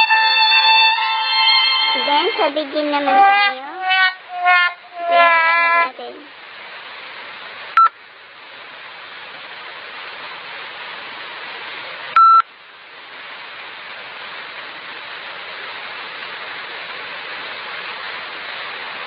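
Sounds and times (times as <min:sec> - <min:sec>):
steady hiss: 0:00.0 - 0:19.0
short electronic beeps: 0:12.2 - 0:12.4.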